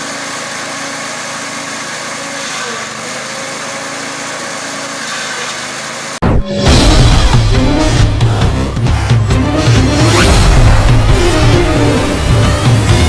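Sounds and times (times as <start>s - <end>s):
small engine running: 0.0s - 6.2s, 7.2s - 13.0s
loud music with hits: 6.2s - 13.0s.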